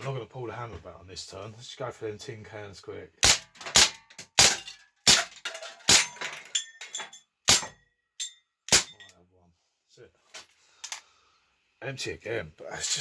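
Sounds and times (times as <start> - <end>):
pellets clinking on metal targets: 3.2 - 9.2.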